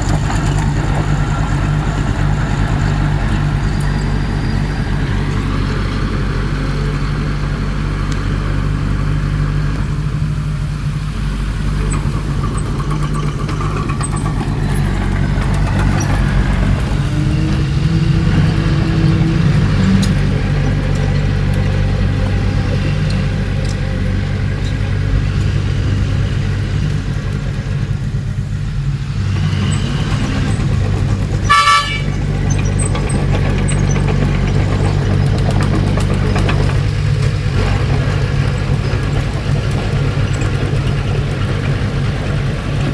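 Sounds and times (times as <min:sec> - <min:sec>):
bulldozer diesel engine running: 0:00.0 - 0:42.9
short horn toot: 0:31.5 - 0:32.2.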